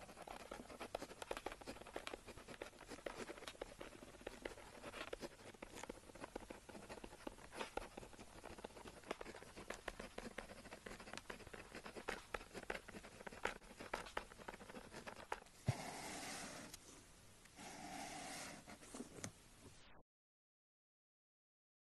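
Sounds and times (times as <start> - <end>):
pen scratching on paper: 0.0 - 16.8, 17.6 - 19.0.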